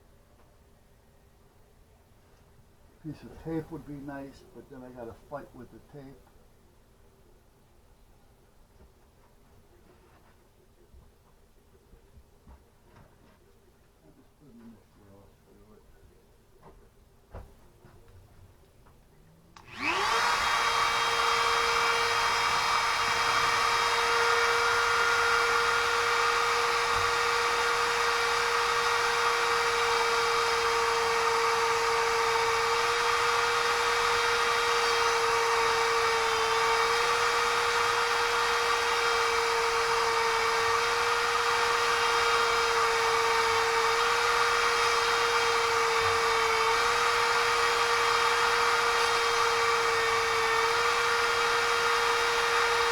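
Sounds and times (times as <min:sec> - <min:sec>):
electric drill whining: 0:19.6 - 0:52.9.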